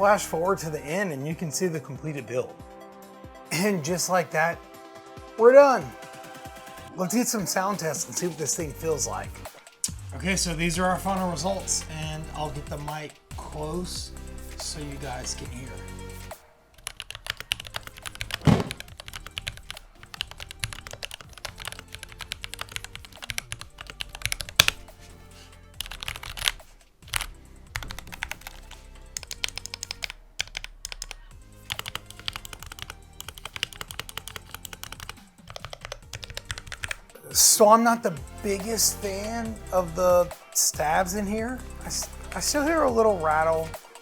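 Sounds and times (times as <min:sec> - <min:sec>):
keyboard typing clacks: 0:16.8 - 0:24.8, 0:25.8 - 0:37.0.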